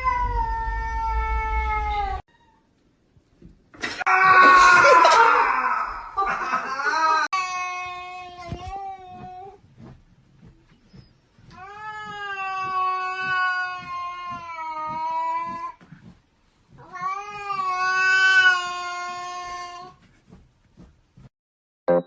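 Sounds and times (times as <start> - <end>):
cat yowling: 0.0 - 2.7, 11.6 - 15.7, 16.8 - 19.9.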